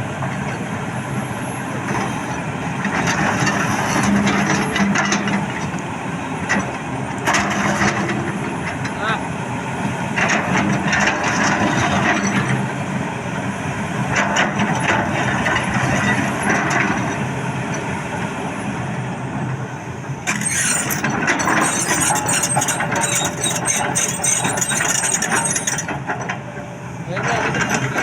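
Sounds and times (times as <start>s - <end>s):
excavator diesel engine: 0.0s - 28.0s
metallic clanking and rattling: 20.3s - 28.0s.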